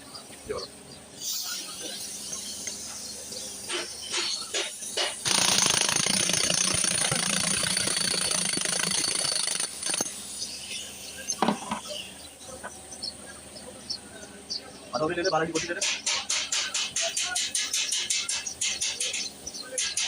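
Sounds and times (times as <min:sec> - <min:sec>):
rapid mechanical hammering rattle: 0:03.6 - 0:10.1, 0:15.5 - 0:20.0.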